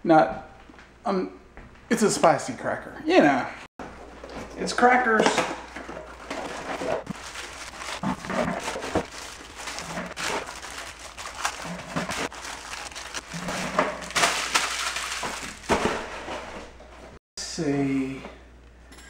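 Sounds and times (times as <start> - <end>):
crackers cracking: 5.7 - 16.1
cracker packaging crinkling: 6.0 - 16.1.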